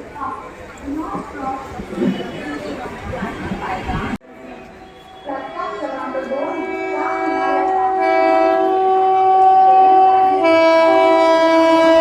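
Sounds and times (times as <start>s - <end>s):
train horn blast: 4.9s - 12.0s.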